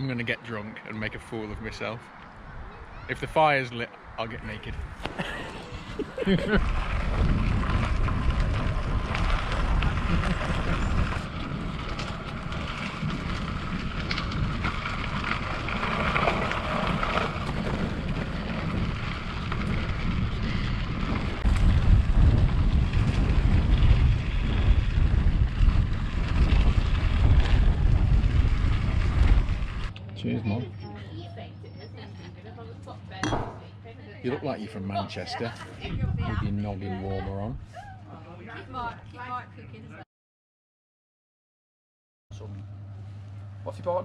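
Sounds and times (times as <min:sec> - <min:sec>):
road and tyre noise: 0:00.0 - 0:33.8
wind buffeting microphone: 0:04.0 - 0:30.6, 0:35.7 - 0:38.0.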